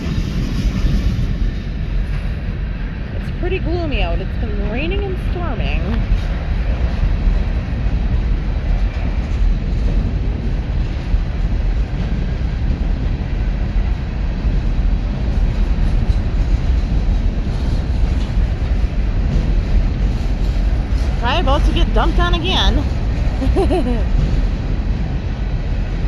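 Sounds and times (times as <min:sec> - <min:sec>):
freight train wheels on rails: 0:00.0 - 0:26.0.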